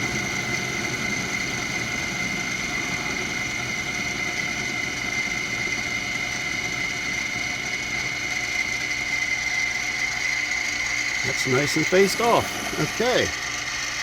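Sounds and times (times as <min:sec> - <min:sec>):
mill motor high-pitched whine: 0:00.0 - 0:14.0
tool bit cutting workpiece: 0:07.7 - 0:14.0.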